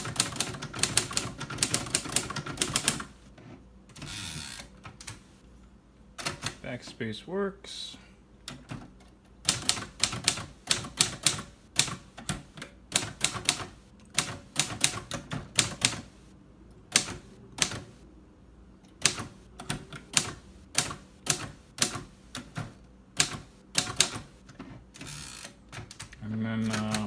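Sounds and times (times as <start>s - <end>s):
typewriter keystroke clacks: 0.0s - 3.1s, 6.2s - 6.6s, 8.5s - 16.2s, 16.9s - 18.0s, 19.0s - 24.4s, 25.0s - 27.0s.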